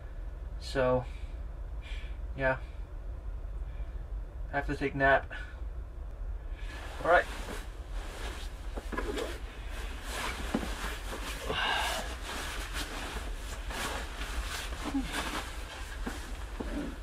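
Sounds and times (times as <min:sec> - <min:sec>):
low steady hum: 0:00.0 - 0:17.0
light rustling: 0:06.6 - 0:17.0
scraping rustle: 0:06.6 - 0:17.0.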